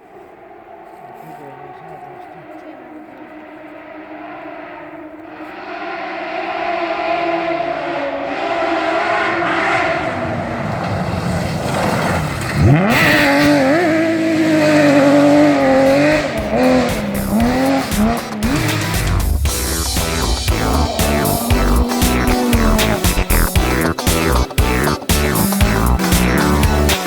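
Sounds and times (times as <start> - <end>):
rally car engine revving: 0.0 - 27.0
music: 15.8 - 27.0.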